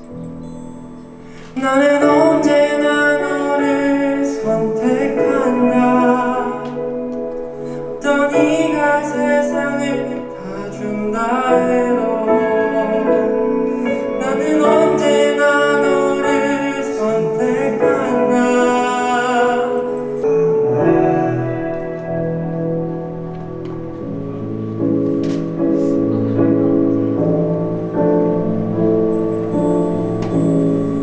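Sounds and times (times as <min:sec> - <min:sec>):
instrumental accompaniment: 0:00.0 - 0:31.0
person singing: 0:01.3 - 0:24.8.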